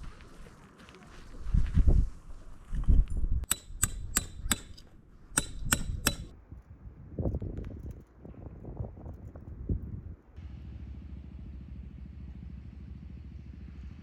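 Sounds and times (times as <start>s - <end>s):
sharp clicks: 3.4s - 6.3s.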